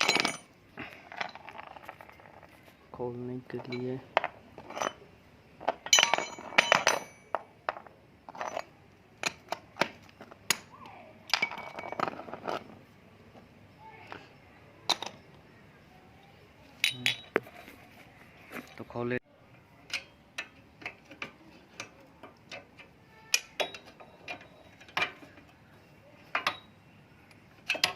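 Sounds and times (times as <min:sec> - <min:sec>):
metal hand tools clinking: 0:00.0 - 0:02.4, 0:03.6 - 0:07.5, 0:08.3 - 0:09.6, 0:16.8 - 0:17.4, 0:19.9 - 0:25.5, 0:26.3 - 0:26.8, 0:27.6 - 0:27.9.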